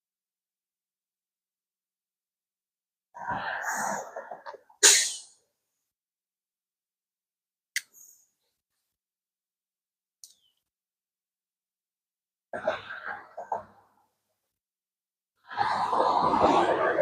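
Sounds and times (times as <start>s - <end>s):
person sneezing: 4.8s - 5.4s.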